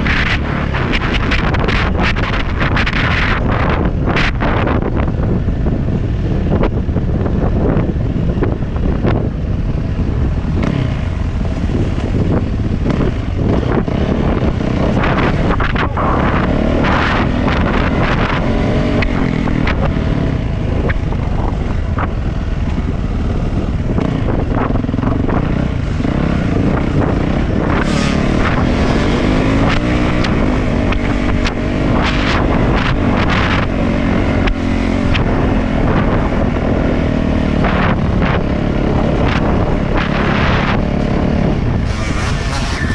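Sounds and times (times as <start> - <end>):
wind noise on microphone: 0.0 - 42.9
dirt bike engine revving: 10.5 - 21.2, 23.6 - 42.9.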